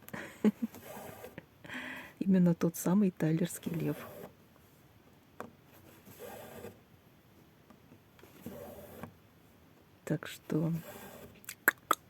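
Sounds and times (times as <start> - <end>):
faint zipping rasps: 5.8 - 6.8, 10.5 - 12.0.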